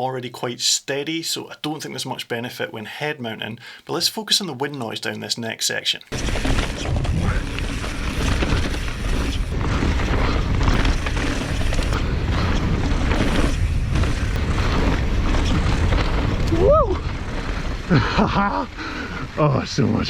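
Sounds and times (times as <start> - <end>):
bike knocks and rattles: 6.1 - 18.0
wind buffeting microphone: 6.1 - 20.0.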